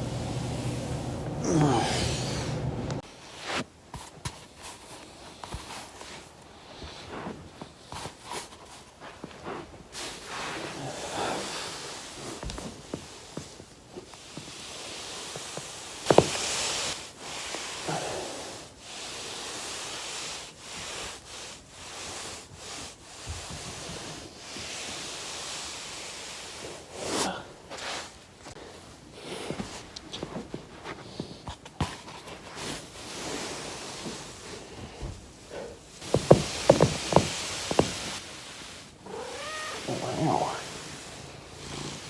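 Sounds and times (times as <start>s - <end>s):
body rolling on foam roller: 0.0s - 3.0s, 5.5s - 19.0s, 28.7s - 42.0s.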